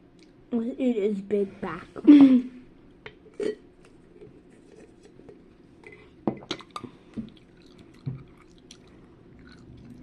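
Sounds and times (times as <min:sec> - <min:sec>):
chewing sticky candy: 0:06.6 - 0:10.0.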